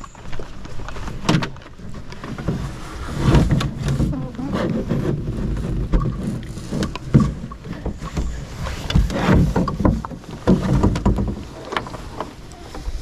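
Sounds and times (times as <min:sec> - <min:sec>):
rustling: 0:00.0 - 0:13.0
knocks on a canoe hull: 0:06.8 - 0:11.5.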